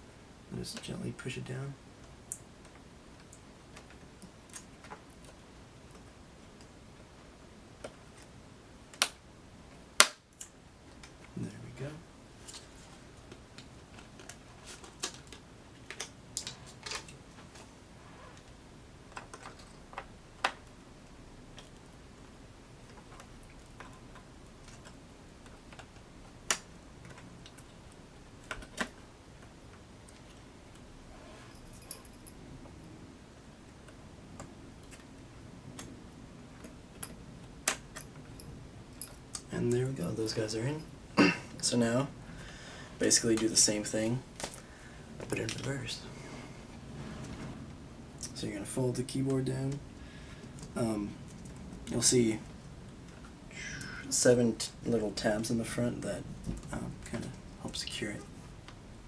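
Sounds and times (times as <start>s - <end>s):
sharp snaps of clips locking: 10.0s - 10.5s.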